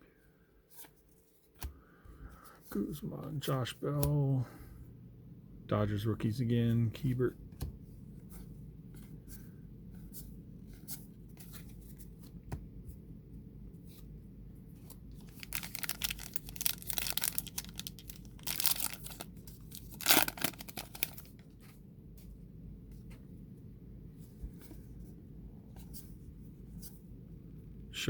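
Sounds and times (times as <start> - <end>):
wrapper crinkling and tearing: 15.2 - 21.5.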